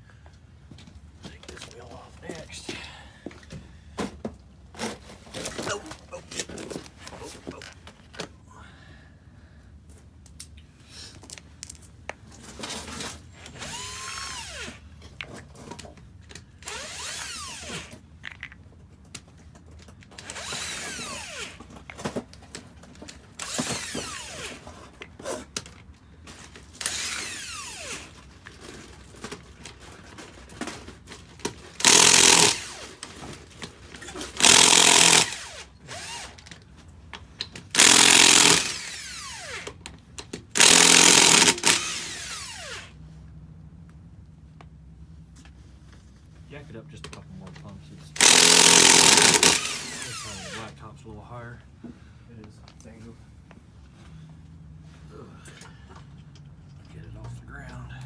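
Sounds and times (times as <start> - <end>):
impact wrench bursts: 13.5 - 14.9, 16.6 - 18.0, 20.2 - 21.8, 23.3 - 24.8, 26.7 - 28.3, 31.6 - 33.3, 34.0 - 36.5, 37.7 - 39.8, 40.6 - 43.0, 48.2 - 50.8.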